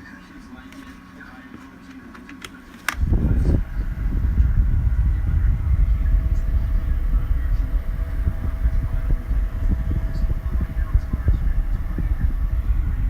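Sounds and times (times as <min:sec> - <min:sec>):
faint motor hum: 0:00.0 - 0:13.0
fan airflow buffeting microphone: 0:00.0 - 0:13.0.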